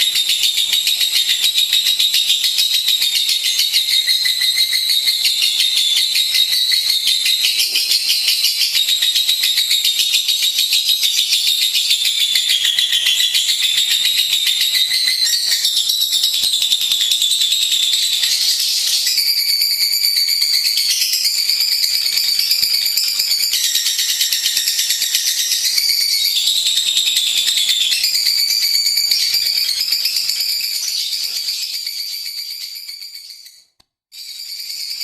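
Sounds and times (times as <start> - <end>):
bird trilling chatter: 3.6 - 9.3.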